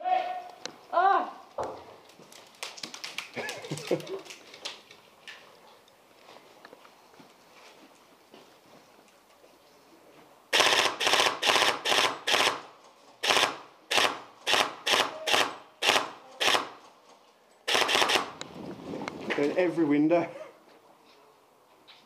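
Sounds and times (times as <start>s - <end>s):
airsoft guns firing bursts: 10.5s - 16.8s, 17.7s - 18.4s.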